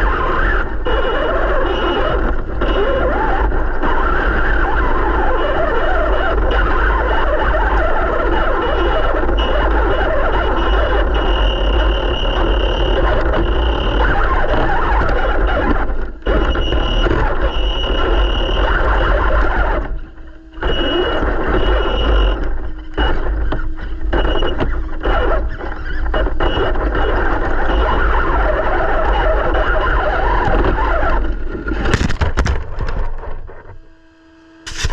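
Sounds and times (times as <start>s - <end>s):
tyre and ground noise: 0.0s - 33.8s
high pulsing whine: 0.0s - 34.9s
rc car motor and gears rattling: 34.7s - 34.9s.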